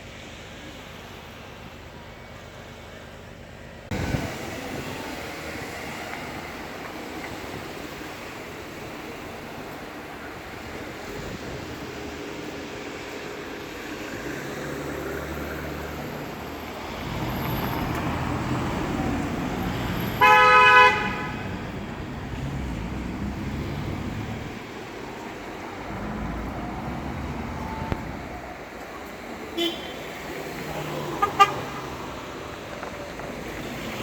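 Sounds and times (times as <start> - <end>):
street traffic noise: 0.0 - 34.0
vehicle passing: 13.9 - 29.3
vehicle horn honk: 20.1 - 21.5, 29.6 - 30.1, 31.2 - 31.7.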